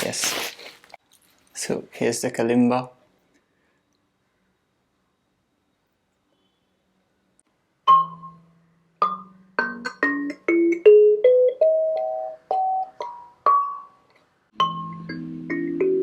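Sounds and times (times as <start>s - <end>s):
kalimba notes plucked: 14.6s - 16.0s.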